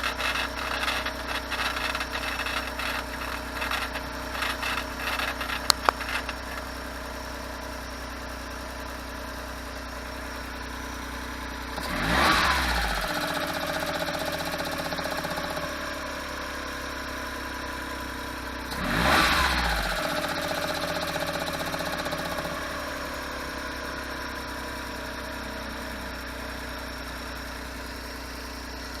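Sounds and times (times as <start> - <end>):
gearbox rattle: 0.0 - 6.7
car engine idling and revving: 0.0 - 29.0.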